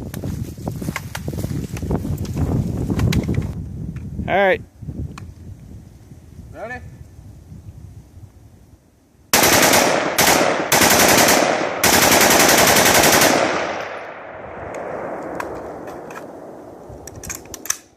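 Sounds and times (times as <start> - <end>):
rapid automatic gunfire: 9.4 - 13.9.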